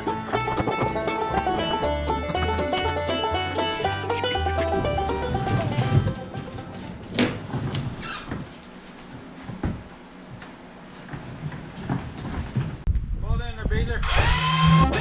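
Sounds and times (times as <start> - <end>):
short creak: 7.8 - 8.5.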